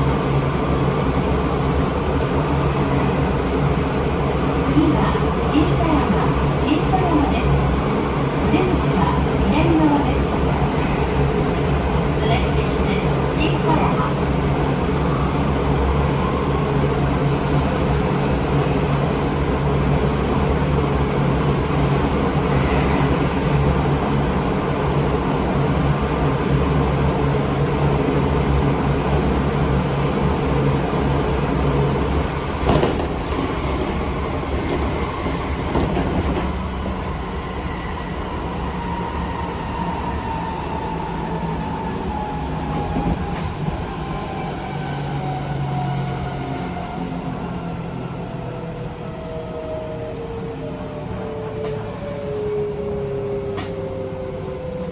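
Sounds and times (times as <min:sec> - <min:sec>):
electric train running hum: 0:00.0 - 0:54.9.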